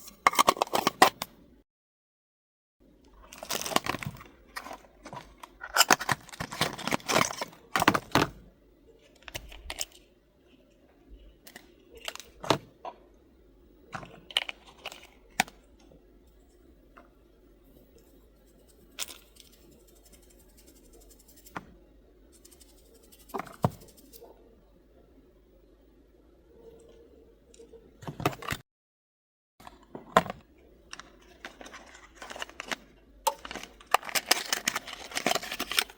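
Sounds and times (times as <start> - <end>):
packaging crinkling and tearing: 3.3 - 4.2, 31.4 - 35.9.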